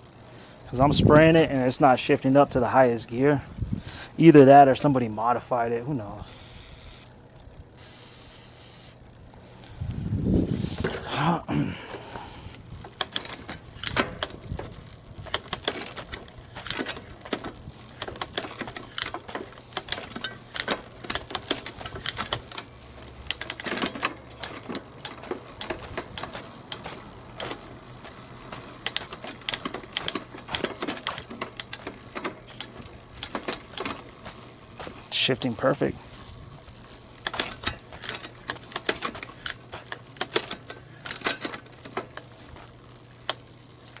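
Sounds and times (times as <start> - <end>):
bicycle gears clicking: 0.0 - 44.0
handling rustle: 10.4 - 44.0.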